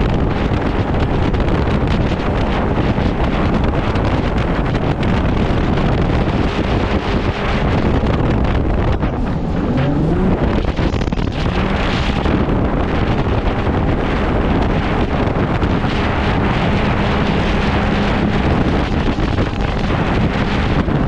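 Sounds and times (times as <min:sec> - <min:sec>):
boat engine and water noise: 0:00.0 - 0:21.0
wind buffeting microphone: 0:00.0 - 0:21.0
brief rising tone: 0:09.0 - 0:10.7.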